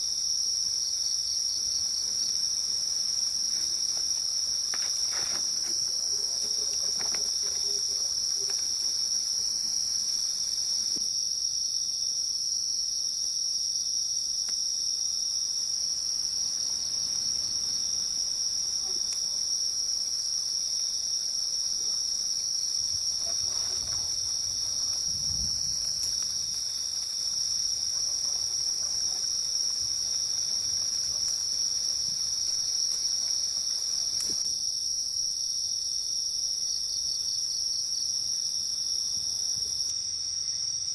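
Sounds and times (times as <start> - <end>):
insects chirping chorus: 0.0 - 40.9
faint rustles: 22.9 - 34.4.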